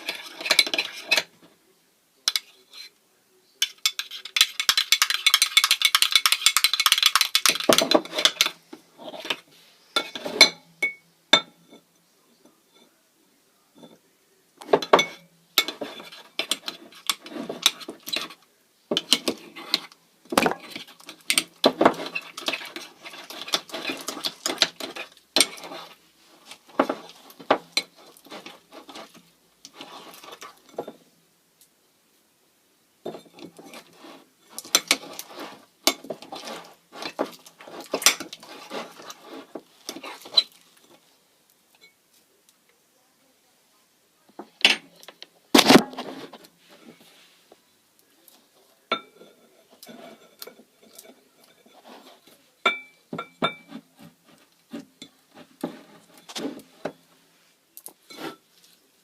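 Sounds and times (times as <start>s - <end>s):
spoon clinking and scraping bowl: 0.0s - 1.3s, 3.6s - 9.4s, 10.0s - 11.9s, 14.7s - 19.9s, 20.5s - 31.0s, 33.1s - 40.6s, 48.9s - 53.9s.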